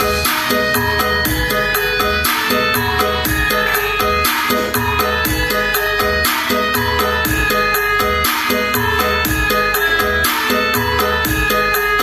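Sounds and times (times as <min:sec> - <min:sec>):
loud music with heavy bass: 0:00.0 - 0:12.0.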